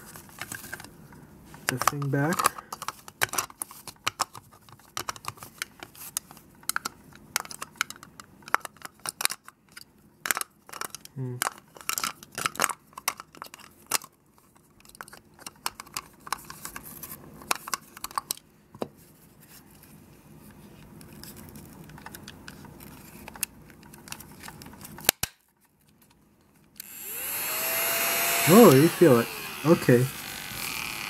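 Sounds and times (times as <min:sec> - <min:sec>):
plastic parts clicking and rustling: 0:00.1 - 0:01.0, 0:01.6 - 0:18.5, 0:21.0 - 0:26.9
sharp plastic snap: 0:25.0 - 0:25.4.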